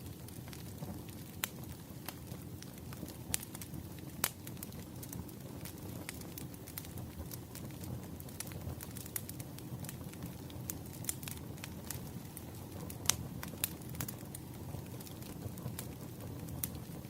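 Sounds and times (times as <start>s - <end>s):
low steady fire rumble: 0.0s - 17.0s
wood fire crackling and popping: 0.0s - 17.0s.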